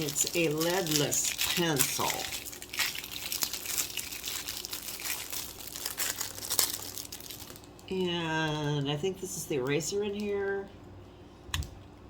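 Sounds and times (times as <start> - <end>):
packaging crinkling and rustling: 0.0 - 9.1.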